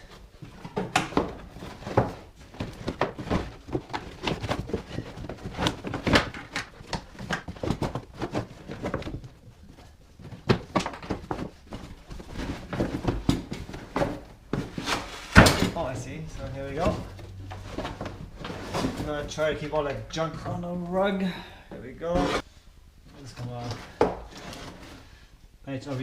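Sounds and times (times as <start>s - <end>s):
debris being shifted by hand: 0.0s - 19.7s.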